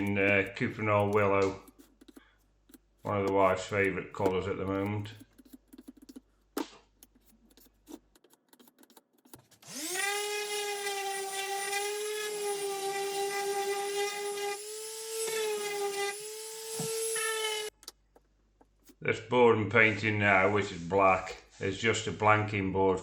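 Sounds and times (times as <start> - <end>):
power tool motor whine: 9.6 - 17.7.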